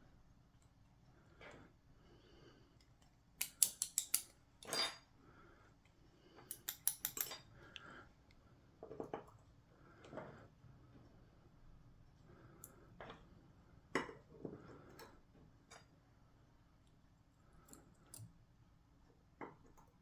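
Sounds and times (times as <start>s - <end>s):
lock parts clicking: 3.4s - 4.3s, 6.5s - 7.3s
soft metal clinks: 3.4s - 5.1s, 6.5s - 7.6s.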